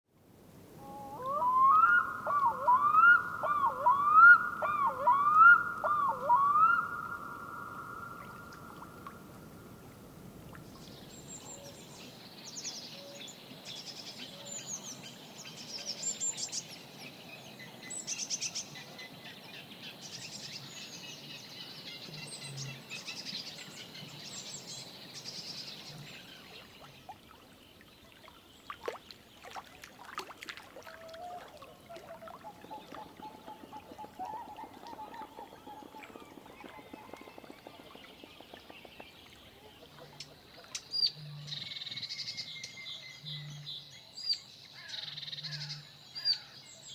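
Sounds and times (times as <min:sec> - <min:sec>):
looping swooping animal calls: 0:01.0 - 0:08.4
high chirps chorus: 0:01.1 - 0:08.8.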